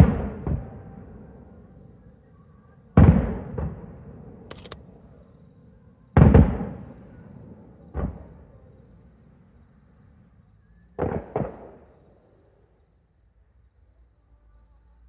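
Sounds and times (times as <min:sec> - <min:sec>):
sharp crack: 0:04.5 - 0:04.8.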